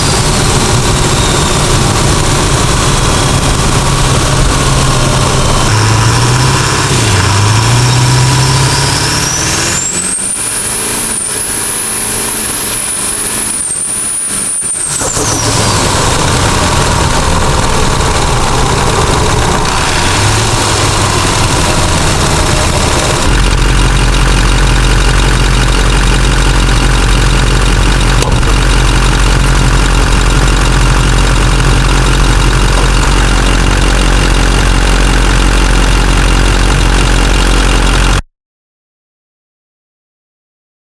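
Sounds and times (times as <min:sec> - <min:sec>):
diesel engine running: 0:00.0 - 0:38.2
turbo whistle: 0:00.8 - 0:01.9, 0:08.6 - 0:15.9.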